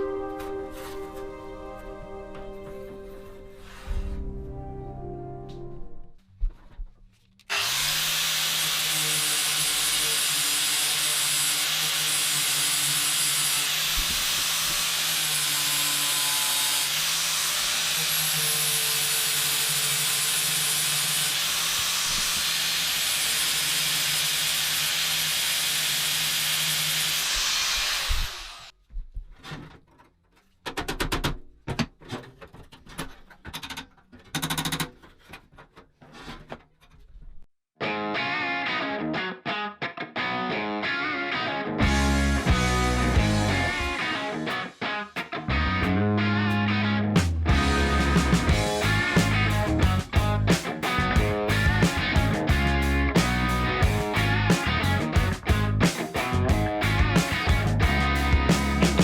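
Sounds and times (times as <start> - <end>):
power tool running: 7.5 - 28.7, 41.8 - 44.2
sharp clicks and knocks: 28.9 - 37.0.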